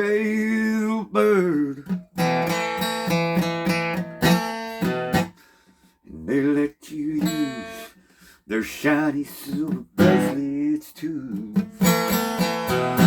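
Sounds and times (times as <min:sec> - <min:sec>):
strummed acoustic guitar: 0:00.0 - 0:13.0
person singing: 0:06.1 - 0:07.9, 0:08.5 - 0:13.0.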